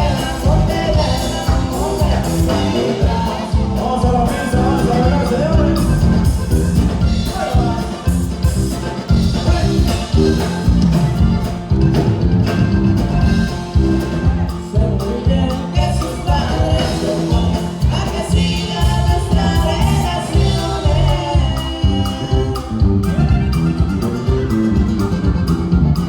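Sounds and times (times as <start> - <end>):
accordion: 0.0 - 26.0
bajo sexto guitar: 0.0 - 26.0
bass: 0.0 - 26.0
drums steady beat: 0.0 - 26.0.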